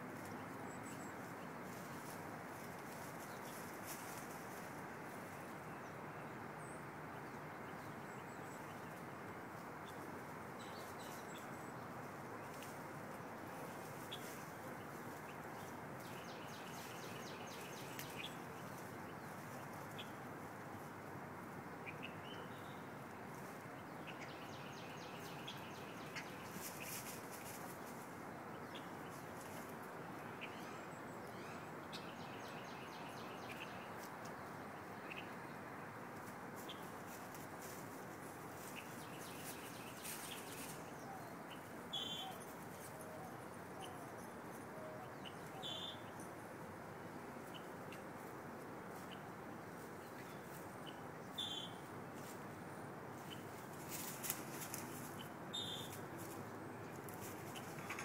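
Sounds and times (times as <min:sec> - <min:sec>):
steady background noise: 0:00.0 - 0:58.0
small birds chirping and trilling: 0:13.6 - 0:20.9, 0:21.8 - 0:35.6, 0:36.2 - 0:46.5, 0:48.9 - 0:52.4, 0:53.1 - 0:58.0.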